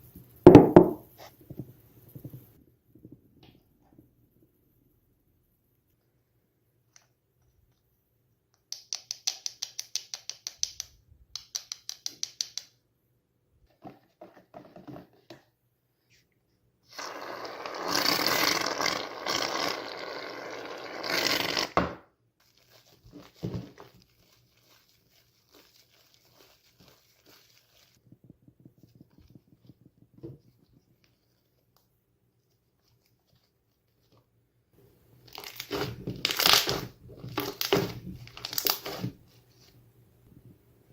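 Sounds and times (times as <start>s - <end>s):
slime crackling: 35.2s - 39.2s.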